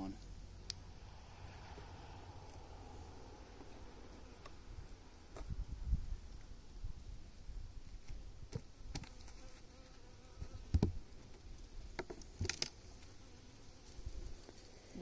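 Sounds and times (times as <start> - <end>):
hive tool knocks and cracks: 12.0 - 12.7.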